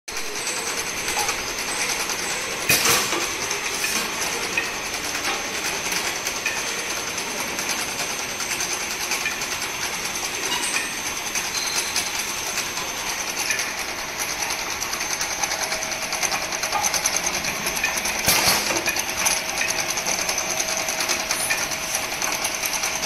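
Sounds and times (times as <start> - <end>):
machinery rattling and ticking: 0.1 - 23.0.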